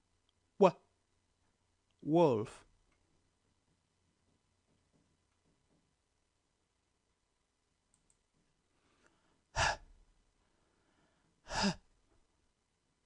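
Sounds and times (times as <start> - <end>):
breathy puffs of breath: 8.8 - 11.9.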